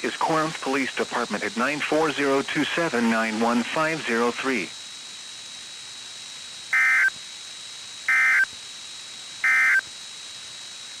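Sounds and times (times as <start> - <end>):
radio hiss: 0.0 - 5.8
digital data tone bursts: 6.7 - 7.2, 8.1 - 8.5, 9.4 - 9.9.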